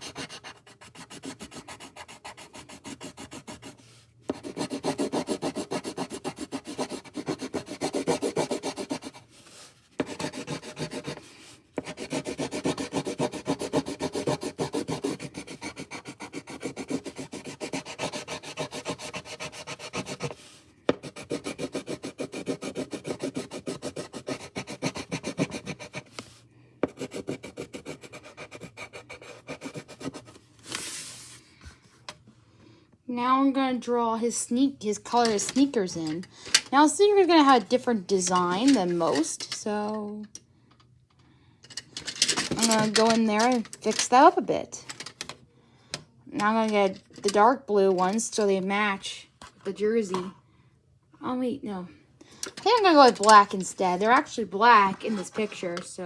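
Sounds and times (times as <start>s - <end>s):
colouring tool scribbling on paper: 0.0s - 26.2s, 26.8s - 30.3s.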